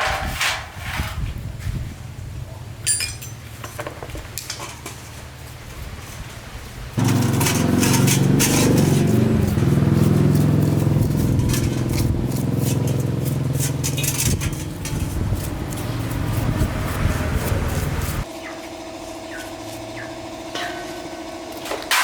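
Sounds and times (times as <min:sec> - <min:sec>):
metallic clicks and clatter: 0:07.0 - 0:16.6
motor running at low pitch: 0:07.0 - 0:22.0.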